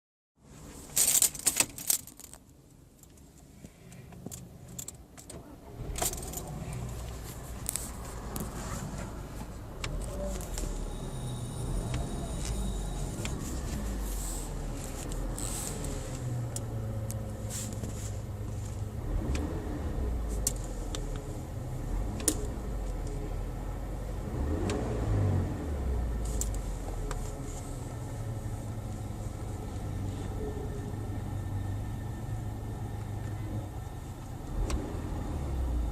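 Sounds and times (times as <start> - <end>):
car cabin hum: 4.1 - 34.9.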